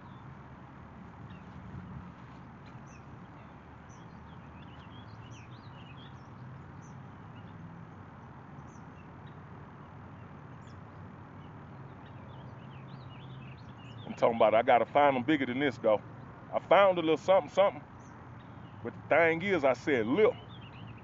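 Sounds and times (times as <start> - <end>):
small birds chirping: 1.1 - 21.0.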